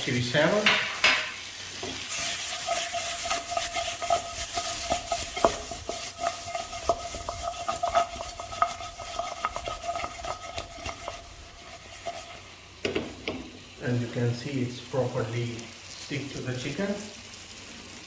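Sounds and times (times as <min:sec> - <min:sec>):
food sizzling in a pan: 0:00.0 - 0:18.0
spoon knocking against pan: 0:00.6 - 0:02.0, 0:03.2 - 0:11.1, 0:12.8 - 0:13.5.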